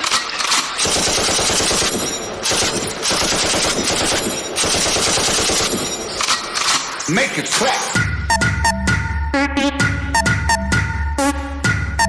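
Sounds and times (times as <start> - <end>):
machine-gun fire: 0.0 - 6.9.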